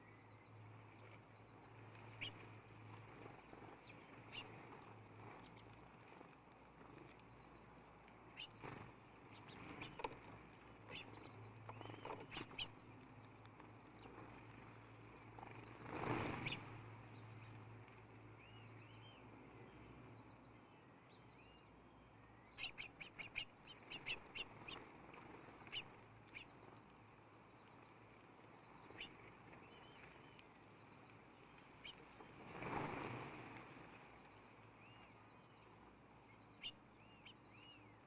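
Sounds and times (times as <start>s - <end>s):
bird chirps: 0.0s - 2.4s, 8.4s - 12.8s, 20.2s - 26.8s, 27.6s - 31.1s, 33.8s - 38.0s
low steady hum: 0.0s - 38.0s.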